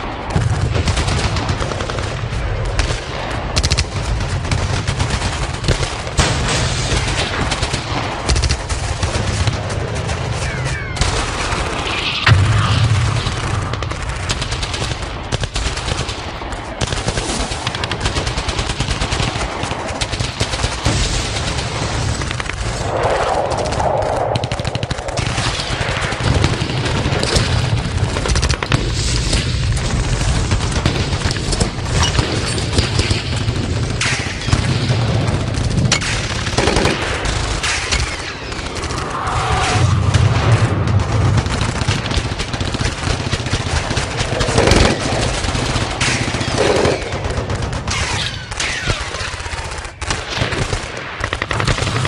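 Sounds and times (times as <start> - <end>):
rapid machine-gun fire: 0.0 - 22.8, 24.3 - 52.0
low rumble: 22.0 - 28.1, 38.6 - 41.8.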